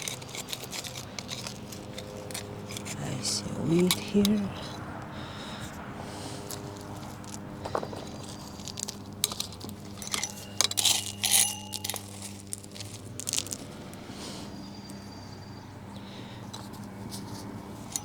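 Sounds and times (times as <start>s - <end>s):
sharp clicks and scrapes: 0.0s - 3.2s, 6.4s - 13.7s, 16.5s - 18.0s
gravel and stones crunching: 0.0s - 18.0s.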